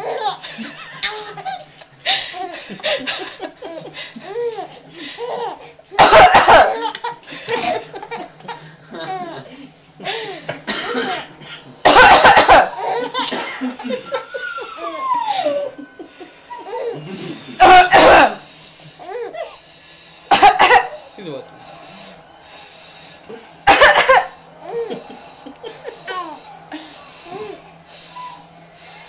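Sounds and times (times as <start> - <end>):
baby laughing: 0.0 - 5.8, 6.4 - 9.5, 12.0 - 17.8, 23.7 - 26.4
woman fake-coughing: 6.0 - 7.9, 10.6 - 13.8, 17.6 - 18.4, 20.3 - 21.0, 23.7 - 24.3.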